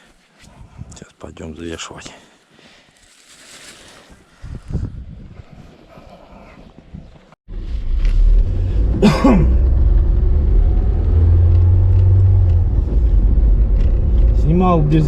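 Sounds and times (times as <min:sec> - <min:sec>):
car interior rumble: 0:07.5 - 0:15.0.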